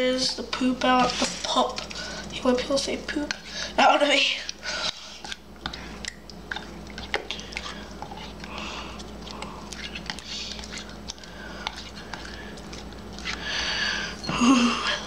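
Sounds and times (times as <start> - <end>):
slime being stirred: 0.1 - 13.6
sticky wet clicks and smacks: 4.5 - 13.4.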